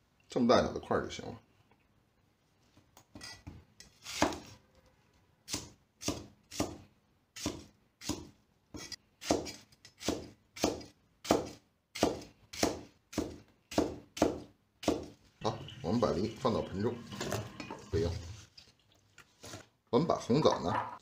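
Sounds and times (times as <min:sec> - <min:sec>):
knife chopping pear: 0:04.0 - 0:04.5, 0:05.5 - 0:15.2.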